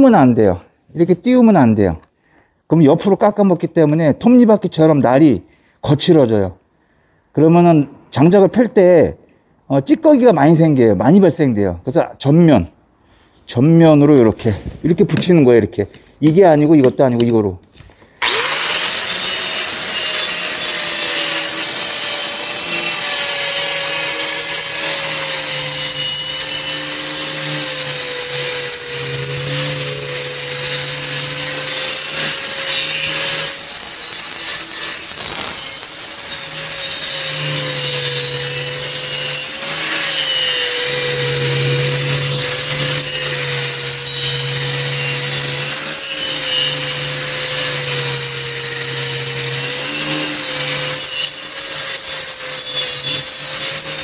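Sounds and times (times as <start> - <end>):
angle grinder grinding steel: 18.2 - 54.0.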